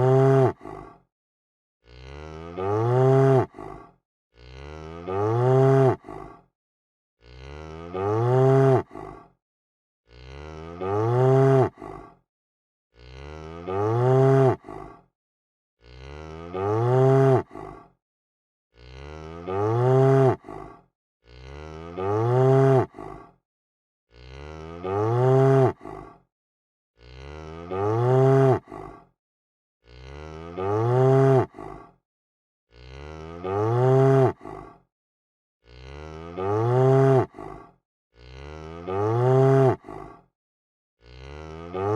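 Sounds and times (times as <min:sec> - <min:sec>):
cow mooing: 0:00.0 - 0:00.6, 0:01.9 - 0:03.5, 0:04.4 - 0:06.0, 0:07.2 - 0:08.9, 0:10.1 - 0:11.8, 0:13.0 - 0:14.6, 0:15.8 - 0:17.5, 0:18.8 - 0:20.5, 0:21.3 - 0:22.9, 0:24.1 - 0:25.8, 0:27.0 - 0:28.7, 0:29.9 - 0:31.5, 0:32.7 - 0:34.4, 0:35.7 - 0:37.3, 0:38.2 - 0:39.9, 0:41.1 - 0:41.9.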